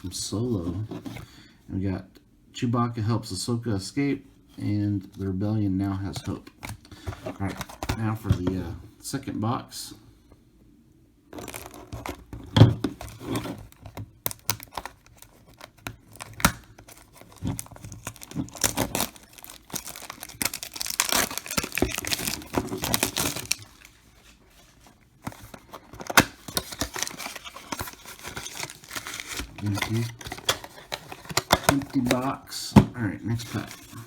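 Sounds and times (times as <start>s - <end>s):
foil packs crinkling: 11.4s - 12.1s, 13.0s - 32.4s
cardboard box tearing: 14.5s - 23.9s, 26.0s - 32.2s.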